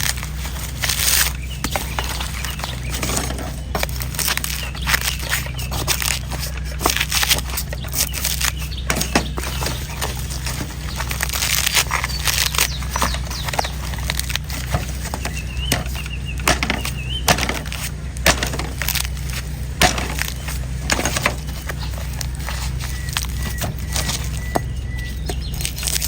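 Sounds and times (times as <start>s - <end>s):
steady low hum: 0.0s - 26.0s
knife chopping coconut husk: 11.1s - 21.6s.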